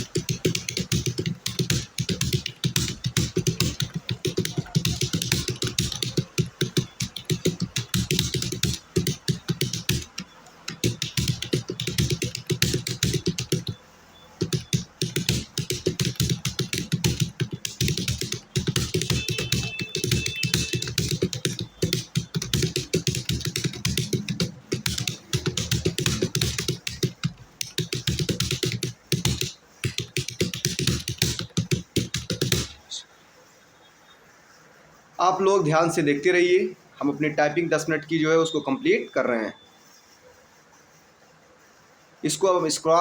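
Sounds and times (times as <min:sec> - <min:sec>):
fast keyboard typing: 0:00.0 - 0:33.0.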